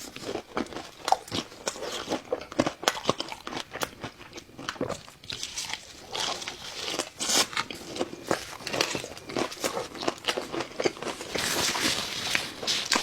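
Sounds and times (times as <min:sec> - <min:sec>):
crunching crisp fried food: 0:00.0 - 0:13.0.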